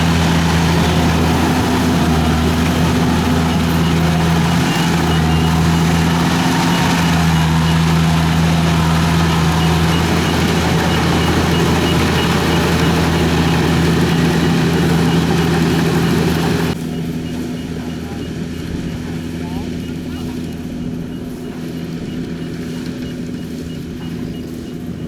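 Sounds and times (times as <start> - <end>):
diesel engine droning: 0.0 - 25.0.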